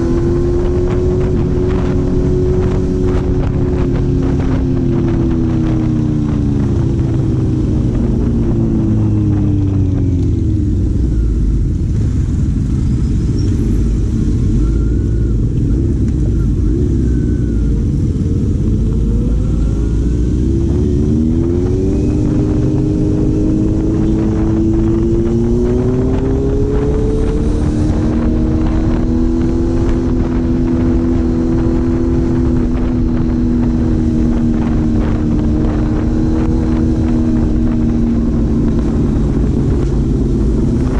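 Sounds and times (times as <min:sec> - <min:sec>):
heavy rumble: 0:00.0 - 0:40.9
vehicle engine: 0:00.0 - 0:40.9.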